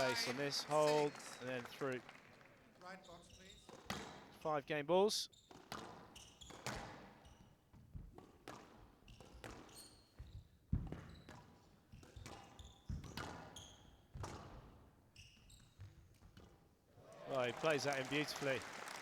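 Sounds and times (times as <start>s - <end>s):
shoes squeaking on court: 2.9s - 4.2s, 5.3s - 7.6s, 8.2s - 16.6s.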